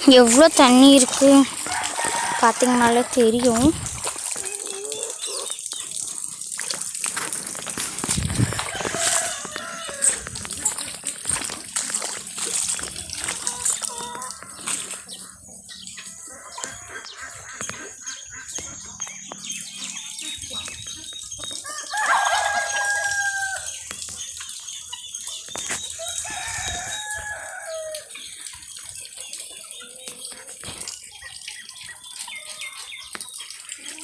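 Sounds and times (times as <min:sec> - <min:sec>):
pattering rain: 0:00.0 - 0:14.6, 0:21.6 - 0:24.2, 0:25.5 - 0:28.4
rooster crowing: 0:01.6 - 0:03.2, 0:08.6 - 0:10.3, 0:21.7 - 0:23.7, 0:26.0 - 0:28.1.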